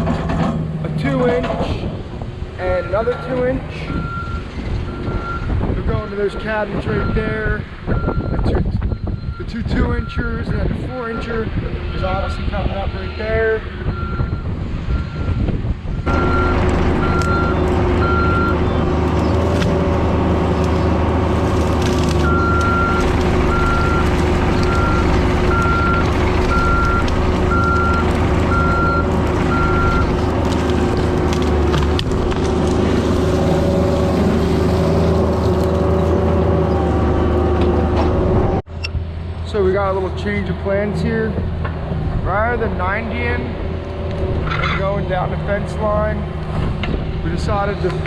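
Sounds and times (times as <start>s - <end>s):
backup alarm beeping: 16.1s - 18.6s, 22.2s - 30.1s
excavator diesel engine running: 16.1s - 40.9s.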